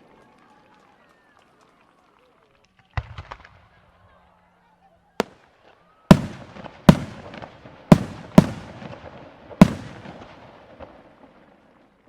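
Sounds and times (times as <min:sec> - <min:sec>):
fireworks booming with echo: 0:06.1 - 0:11.1.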